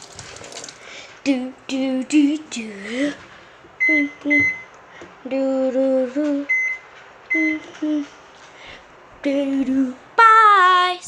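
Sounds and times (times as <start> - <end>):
girl humming a tune: 3.9 - 4.5, 7.3 - 8.1.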